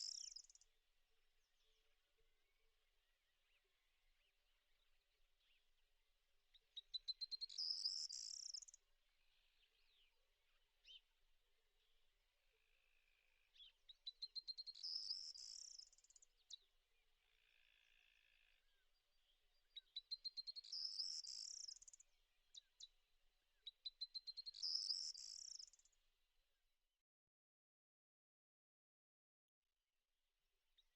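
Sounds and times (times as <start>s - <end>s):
small bird trilling song: 0.0s - 0.6s, 6.8s - 8.8s, 13.6s - 16.7s, 19.8s - 22.0s, 23.6s - 25.9s.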